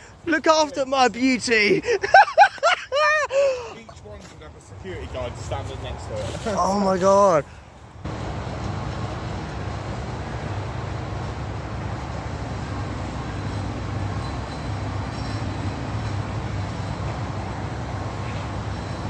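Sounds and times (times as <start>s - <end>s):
continuous even noise: 0.2s - 19.0s
engine rumbling: 8.0s - 19.0s.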